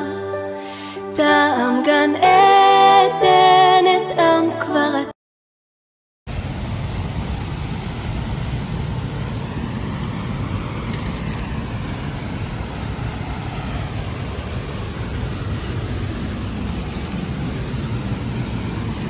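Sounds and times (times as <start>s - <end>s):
waterfall rushing with low rumble: 6.3s - 19.0s.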